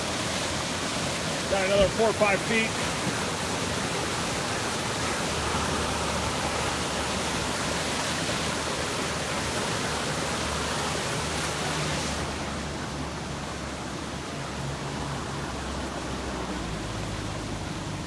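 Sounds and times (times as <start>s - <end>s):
floodwater rushing: 0.0s - 18.0s.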